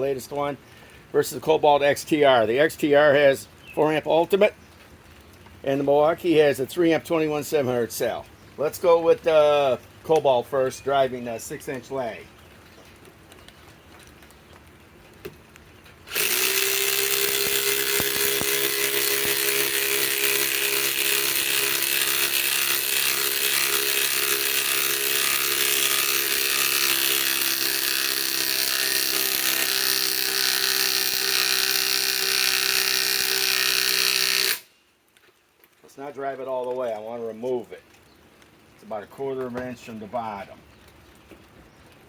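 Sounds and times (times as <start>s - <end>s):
impact driver driving screw: 16.1s - 34.7s.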